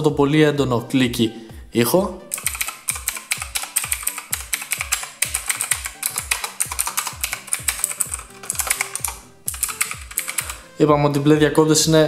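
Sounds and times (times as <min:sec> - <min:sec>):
music with kick drum beat: 0:01.1 - 0:10.8
clicky mechanical keyboard typing: 0:02.3 - 0:10.6.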